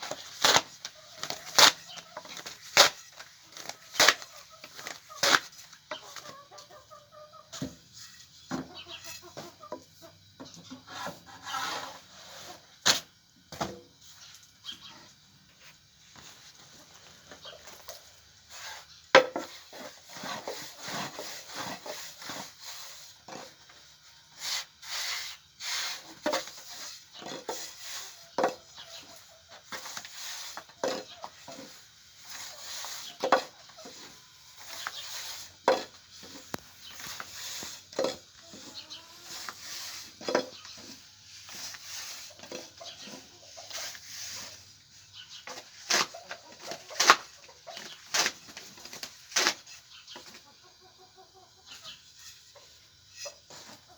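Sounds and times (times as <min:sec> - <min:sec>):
scraping and rubbing: 0:19.6 - 0:23.5.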